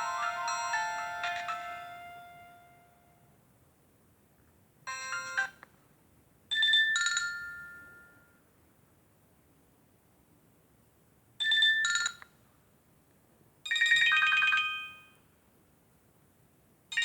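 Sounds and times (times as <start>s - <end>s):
two-note chime: 0.0s - 3.1s
ringtone note: 0.0s - 3.2s.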